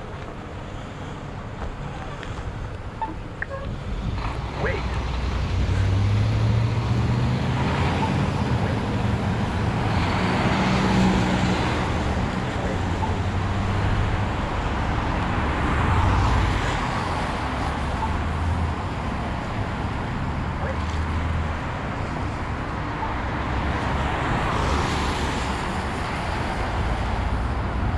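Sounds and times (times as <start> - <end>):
road traffic: 0.0 - 27.9.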